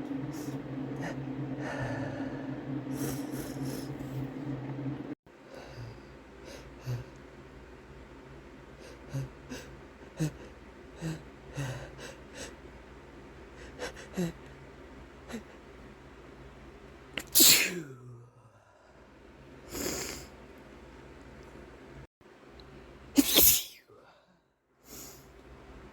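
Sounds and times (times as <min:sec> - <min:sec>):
loud sneeze: 0:17.2 - 0:18.0, 0:23.2 - 0:23.9
person sniffing: 0:23.2 - 0:23.8.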